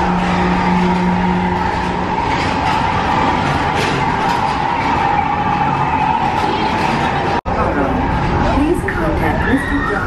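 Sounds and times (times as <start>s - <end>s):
low hum: 0.0s - 5.6s
steady whine: 0.0s - 9.4s
ride car rolling on track: 0.0s - 10.0s.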